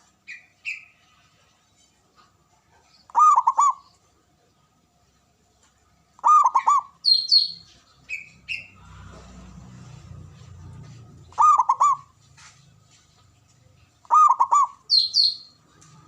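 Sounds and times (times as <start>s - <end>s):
birds chirping: 0.0s - 4.7s, 5.6s - 9.5s, 10.1s - 16.0s
dove cooing: 3.1s - 3.9s, 6.2s - 7.0s, 11.3s - 12.2s, 14.0s - 15.0s.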